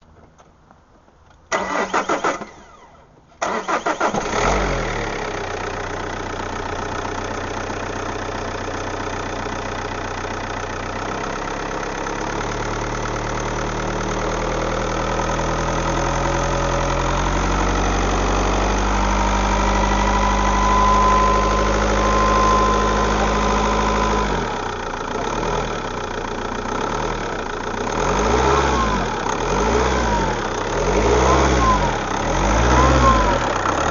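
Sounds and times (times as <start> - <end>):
starter cranking engine: 1.6 - 4.7
engine revving: 3.4 - 5.5, 16.1 - 25.9, 26.8 - 33.9
car engine idling: 4.0 - 33.9
thin whistle: 20.0 - 23.1.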